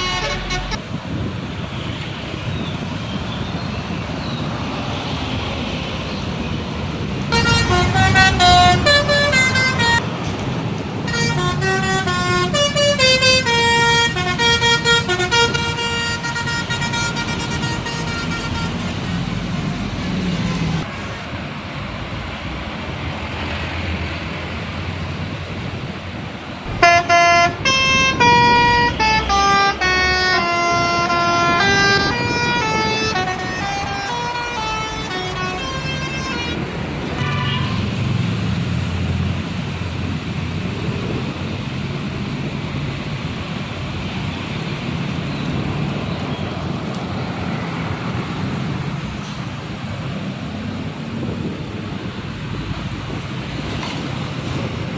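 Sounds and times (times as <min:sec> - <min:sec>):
bus horn playing a melody: 0:00.0 - 0:00.8, 0:07.3 - 0:10.0, 0:11.0 - 0:21.4, 0:26.7 - 0:36.6
engine noise: 0:00.0 - 0:54.9
road traffic: 0:00.0 - 0:54.9.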